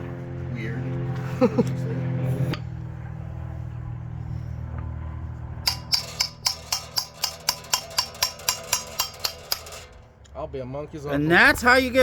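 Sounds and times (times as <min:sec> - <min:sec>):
steady low hum: 0:00.0 - 0:12.0
hammer blows on metal rod: 0:05.7 - 0:09.9.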